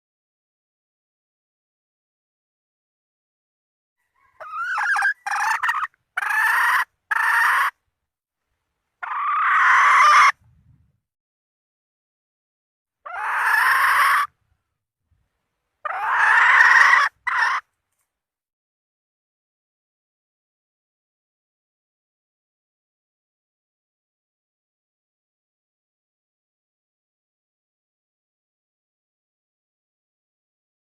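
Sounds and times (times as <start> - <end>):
junglefowl hen calling: 4.0 - 7.8, 9.0 - 10.4, 13.0 - 14.4, 15.8 - 17.7.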